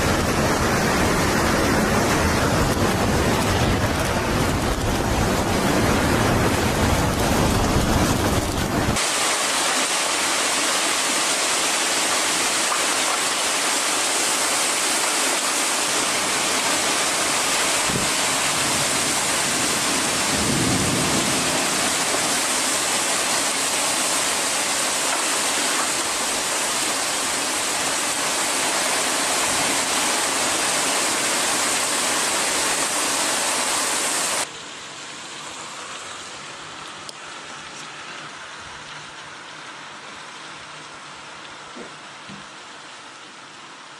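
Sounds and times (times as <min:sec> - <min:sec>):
wind buffeting microphone: 0:00.0 - 0:09.0
heavy rain hissing: 0:00.0 - 0:43.9.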